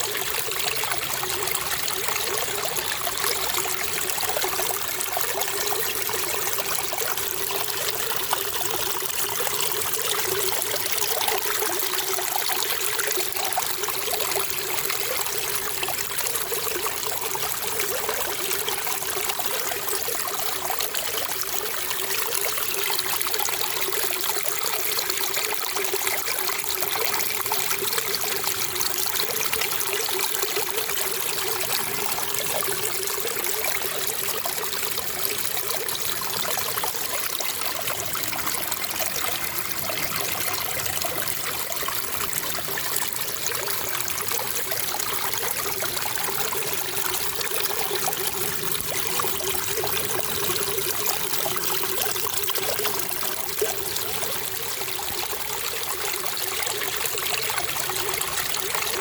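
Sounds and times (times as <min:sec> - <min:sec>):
water trickling and splashing: 0:00.0 - 0:59.0.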